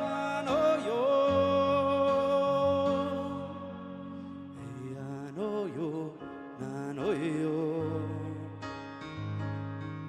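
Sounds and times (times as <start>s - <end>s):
person singing: 0.0s - 8.8s
instrumental chords and bass: 8.6s - 10.0s.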